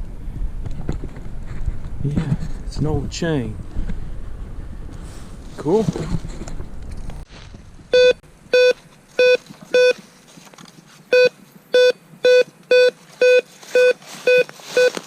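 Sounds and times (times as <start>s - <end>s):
metal detector beeping: 8.0s - 10.0s, 11.1s - 15.0s.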